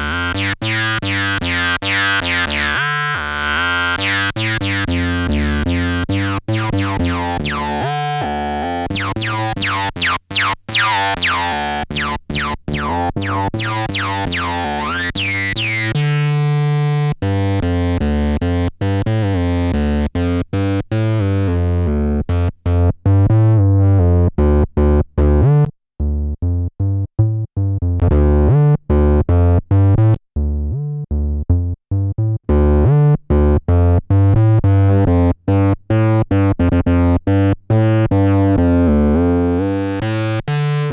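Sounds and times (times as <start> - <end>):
distorted acid bass synth: 0.0 - 22.5, 39.2 - 40.9.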